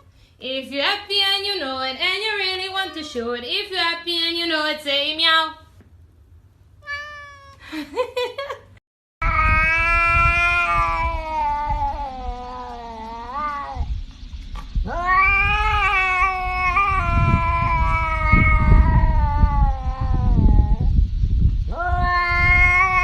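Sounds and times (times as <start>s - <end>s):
cat yowling meows: 6.8s - 7.6s, 9.2s - 13.9s, 14.8s - 20.9s, 21.7s - 23.0s
low rumble: 9.2s - 23.0s.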